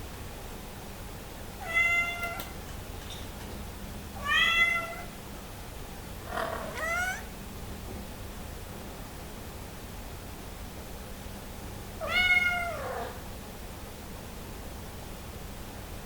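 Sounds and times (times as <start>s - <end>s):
cat meowing: 1.6s - 2.5s, 4.2s - 5.1s, 6.4s - 7.3s, 12.0s - 13.2s.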